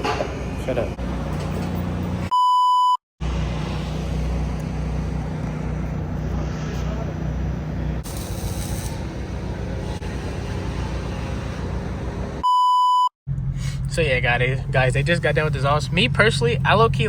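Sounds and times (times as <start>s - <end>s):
censor bleep: 2.3s - 3.0s, 12.4s - 13.1s
car engine drone: 3.2s - 12.4s, 13.3s - 17.0s.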